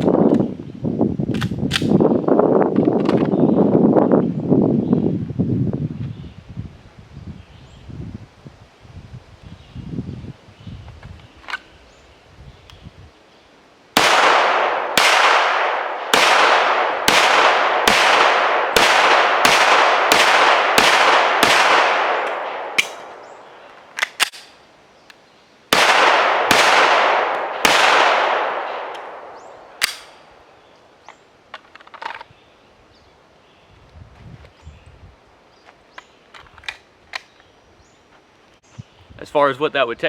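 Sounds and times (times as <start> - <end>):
magazine reload clicks: 1.3 - 2.0, 22.2 - 24.6, 29.8 - 30.2
handgun shots echoing: 14.0 - 24.6, 25.7 - 30.3
sharp snap: 18.8 - 23.3, 24.0 - 24.6, 27.3 - 30.3.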